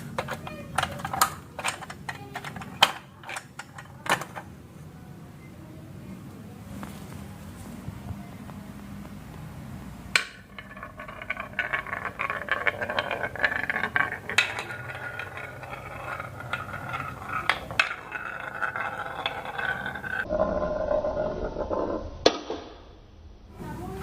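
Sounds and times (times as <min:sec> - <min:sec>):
marbles rolling on track: 0:00.0 - 0:04.5, 0:10.1 - 0:21.2
sharp marble clacks: 0:00.0 - 0:04.5, 0:10.2 - 0:20.3.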